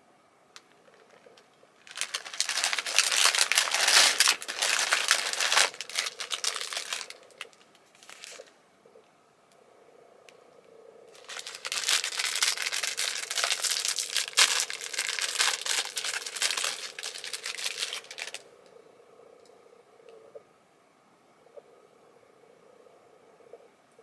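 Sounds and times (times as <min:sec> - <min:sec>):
plastic wrapper crinkling: 0:01.8 - 0:08.5, 0:11.2 - 0:18.4.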